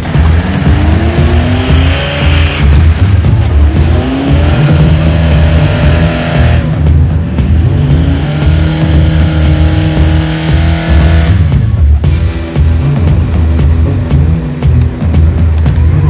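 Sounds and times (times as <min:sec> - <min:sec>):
music with pulsing bass: 0:00.0 - 0:16.0
vehicle engines revving: 0:00.0 - 0:16.0.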